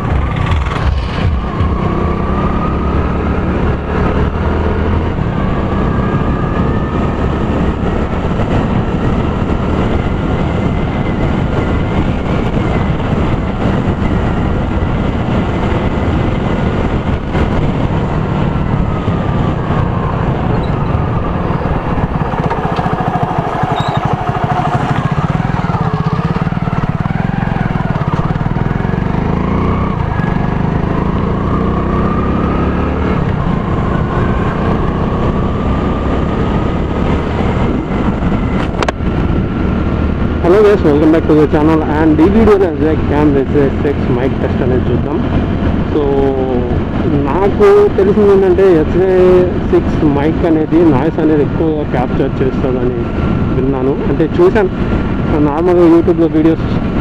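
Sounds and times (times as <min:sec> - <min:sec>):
motorcycle engine: 0:00.0 - 0:57.0
wind and road noise: 0:00.0 - 0:57.0.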